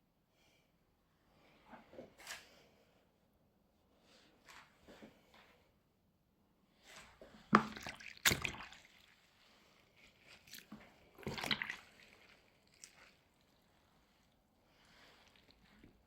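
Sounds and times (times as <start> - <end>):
wet squelching of cabbage: 6.9 - 16.0.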